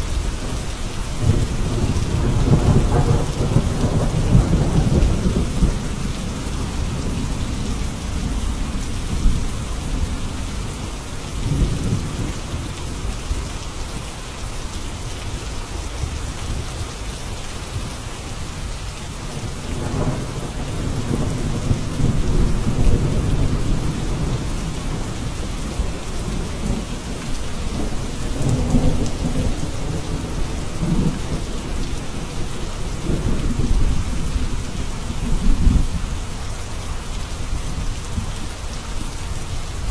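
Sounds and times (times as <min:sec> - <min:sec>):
steady rain falling: 0:00.0 - 0:39.9
low rolling thunder: 0:00.2 - 0:13.6, 0:19.3 - 0:36.4.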